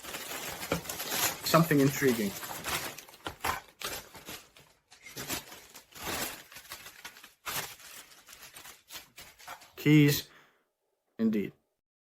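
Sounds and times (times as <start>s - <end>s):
packaging tearing and rustling: 0.0s - 9.8s.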